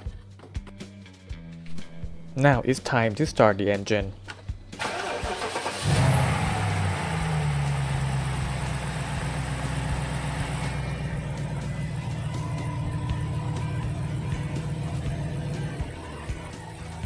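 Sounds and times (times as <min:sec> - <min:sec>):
car engine starting and idling: 0:01.7 - 0:17.0
starter motor cranking: 0:04.2 - 0:17.0.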